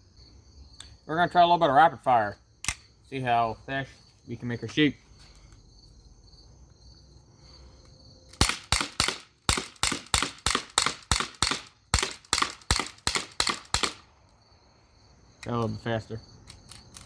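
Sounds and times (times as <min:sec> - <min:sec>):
bb pistol firing rapid shots: 0:08.3 - 0:14.1.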